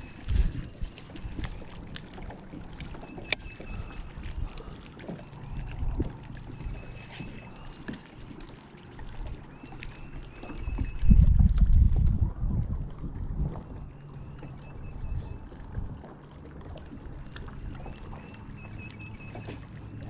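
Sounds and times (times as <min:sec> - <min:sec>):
low wind rumble: 0:00.0 - 0:07.7, 0:10.6 - 0:16.1.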